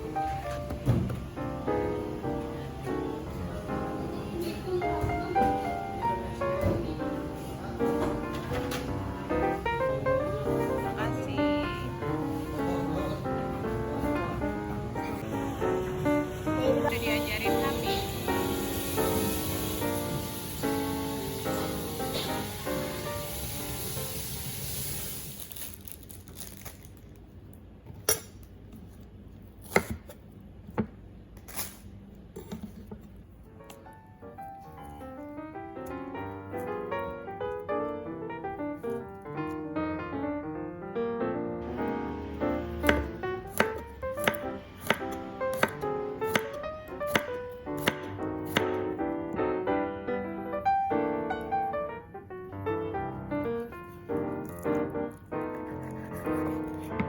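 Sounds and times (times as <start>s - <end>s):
piano background music: 0.0s - 25.4s, 33.3s - 57.0s
steady hiss: 17.4s - 25.8s
knife chopping on cutting board: 29.6s - 30.2s, 42.8s - 48.8s, 55.5s - 57.0s.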